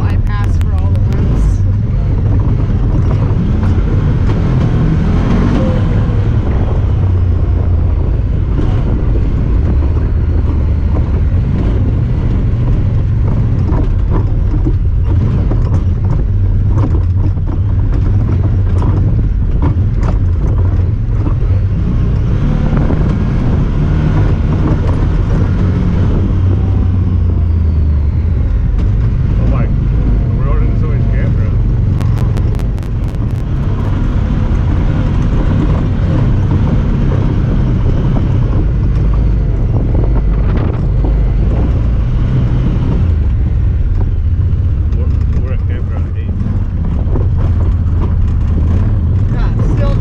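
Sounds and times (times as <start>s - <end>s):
side-by-side engine running: 0.0s - 50.0s
knocks and rattles: 8.5s - 21.7s.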